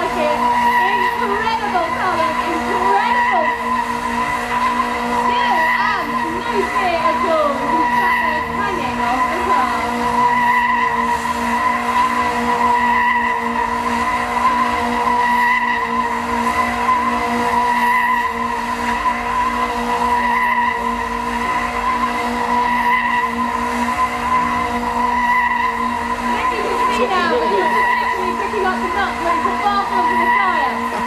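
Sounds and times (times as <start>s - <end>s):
car engine at steady revs: 0.0s - 31.0s
tyre squeal: 0.0s - 31.0s.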